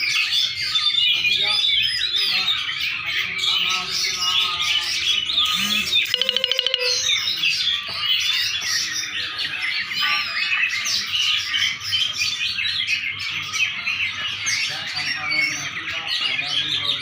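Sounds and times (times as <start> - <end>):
songbirds chirping: 0.0 - 17.0
rapid rattling trill: 6.1 - 7.2.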